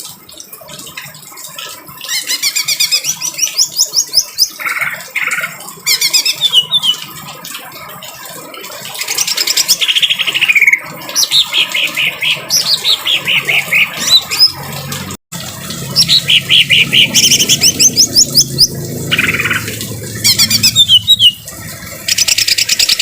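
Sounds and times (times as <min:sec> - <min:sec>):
rain water hiss: 0:00.0 - 0:23.0
bird singing trills: 0:02.2 - 0:07.1, 0:09.2 - 0:14.6, 0:16.0 - 0:21.4.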